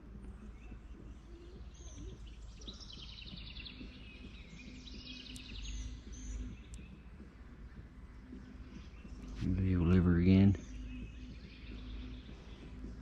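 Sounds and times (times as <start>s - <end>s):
low outdoor rumble: 0.0s - 13.0s
songbird chirping: 0.0s - 13.0s.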